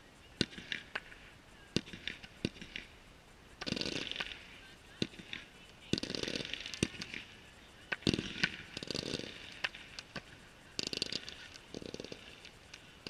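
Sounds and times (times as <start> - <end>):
fireworks shells bursting: 0.0 - 13.0
rapid crackling fireworks: 0.0 - 13.0.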